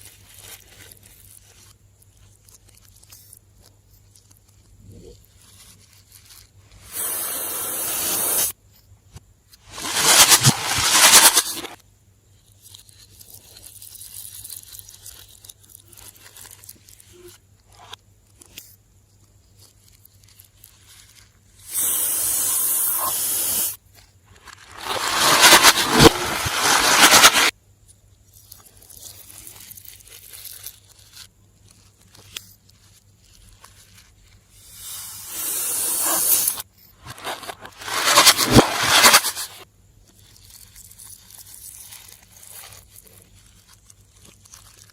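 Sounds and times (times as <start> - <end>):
loud hissing crackling bursts: 6.9 - 8.5, 9.7 - 11.8, 21.7 - 23.8, 24.6 - 27.5, 34.8 - 39.6.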